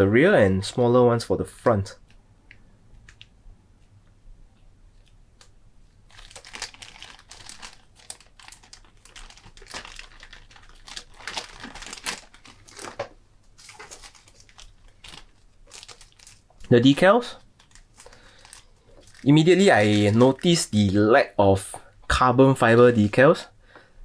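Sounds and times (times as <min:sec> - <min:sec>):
plastic bags crinkling: 0:06.1 - 0:21.1.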